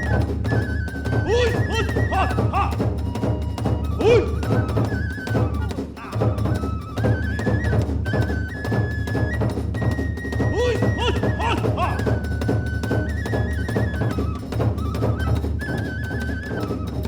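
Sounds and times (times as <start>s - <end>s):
bamboo flute melody: 0.0s - 17.0s
fast steady drumming: 0.0s - 17.0s
brief gliding calls: 1.2s - 7.7s, 10.5s - 12.4s.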